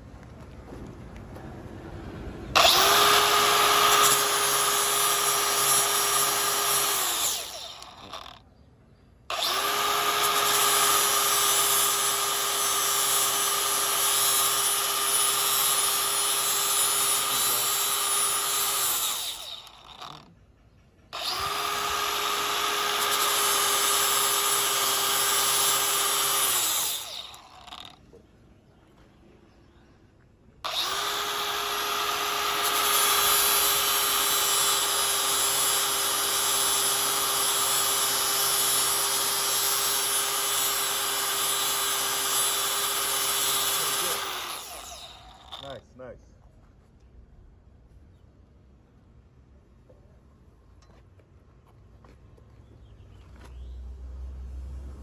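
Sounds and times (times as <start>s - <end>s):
angle grinder grinding steel: 2.6s - 8.4s, 9.3s - 20.3s, 21.2s - 28.0s, 30.7s - 45.8s.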